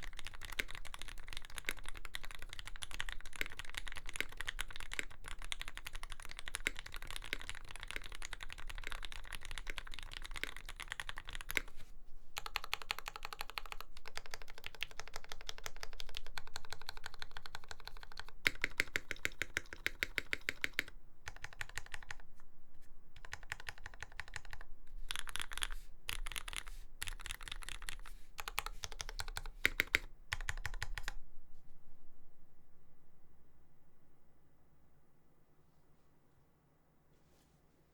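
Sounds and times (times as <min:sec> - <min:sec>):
fast typing on mechanical keyboard: 0:00.0 - 0:11.8, 0:12.4 - 0:22.3, 0:23.2 - 0:31.2.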